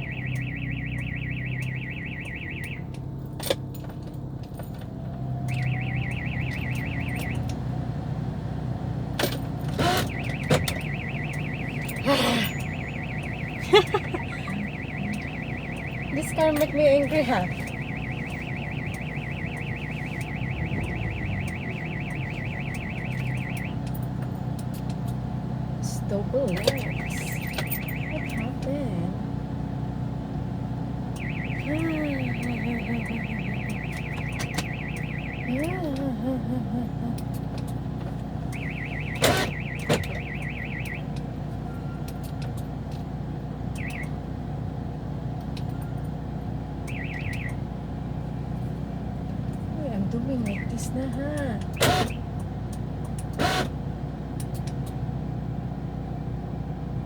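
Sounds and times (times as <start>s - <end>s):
car alarm warbling siren: 0.0s - 3.6s, 5.2s - 7.9s, 9.2s - 24.9s, 25.8s - 29.3s, 30.6s - 37.4s, 38.3s - 44.4s, 45.0s - 48.3s, 50.1s - 52.4s, 53.4s - 53.7s
low hum: 0.0s - 42.1s.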